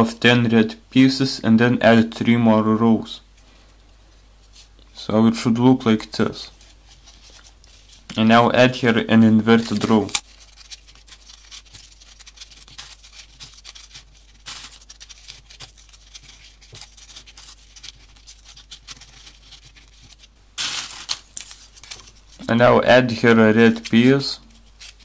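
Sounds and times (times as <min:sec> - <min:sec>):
paper clicks and rustles: 0:06.5 - 0:22.6, 0:23.2 - 0:25.0.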